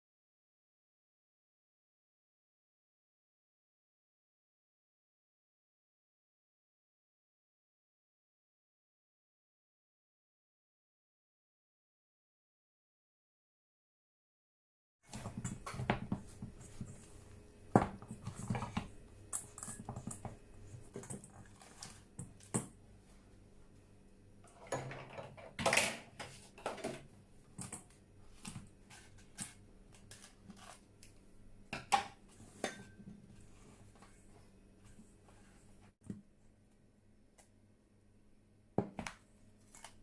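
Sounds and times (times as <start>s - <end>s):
kitchen utensils and bowls clinking: 17.8s - 22.7s, 24.5s - 30.8s, 31.8s - 33.1s.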